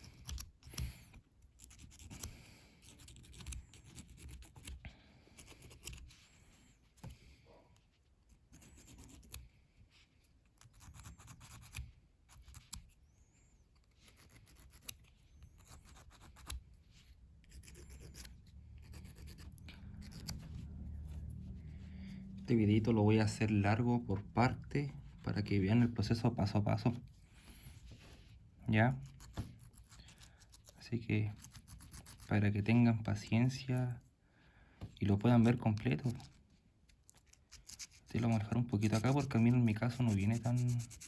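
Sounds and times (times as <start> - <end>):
hand file rasping plastic: 0.0 - 4.8, 13.8 - 16.6, 17.4 - 20.6, 31.4 - 32.3, 37.1 - 41.0.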